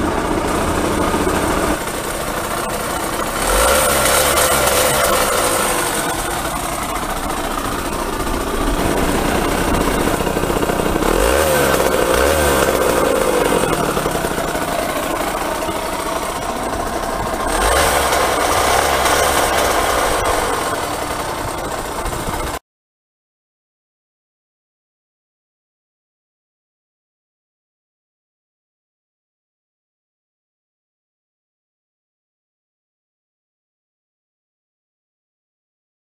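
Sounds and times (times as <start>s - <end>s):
two-stroke engine revving: 0.0s - 22.6s.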